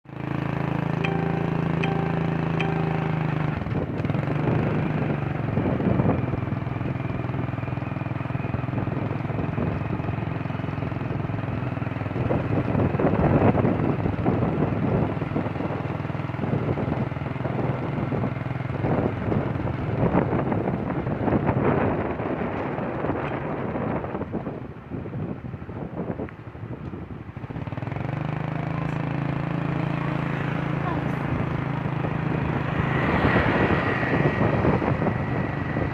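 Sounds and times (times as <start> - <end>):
vehicle engine low hum: 0.1 - 35.9
wind gusts on microphone: 3.5 - 7.6, 12.0 - 35.9.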